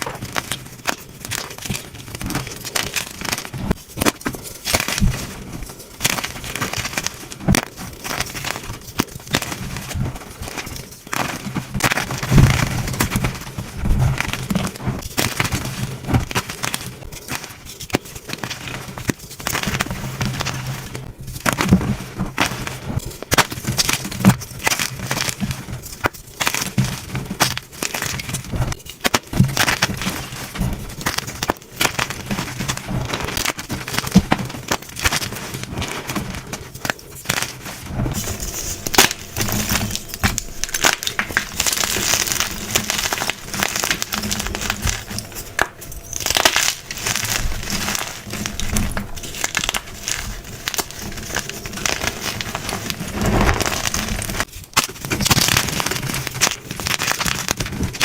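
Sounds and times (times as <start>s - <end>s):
chalk being crushed: 22.4s - 58.0s.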